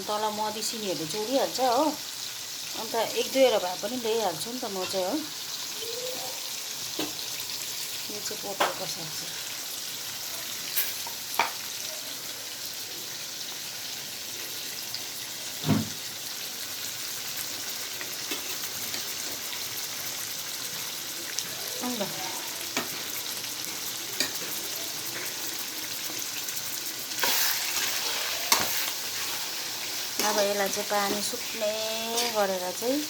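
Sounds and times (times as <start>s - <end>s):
food sizzling in a pan: 0.0s - 33.0s.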